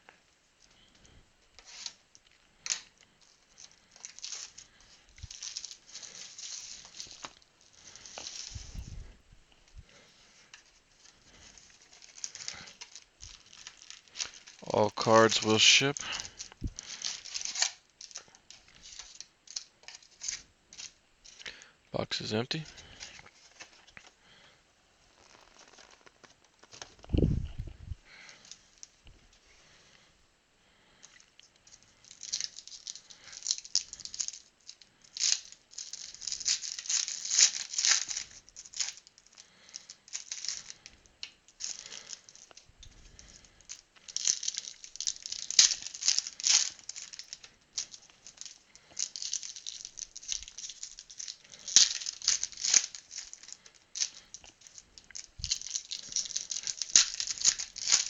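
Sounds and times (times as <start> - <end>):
wrappers crinkling and tearing: 0.6 - 9.1, 9.7 - 21.6, 22.5 - 27.2, 31.0 - 58.0
cards clicking and rustling: 2.6 - 8.8, 9.9 - 21.4, 25.1 - 27.2, 31.0 - 58.0.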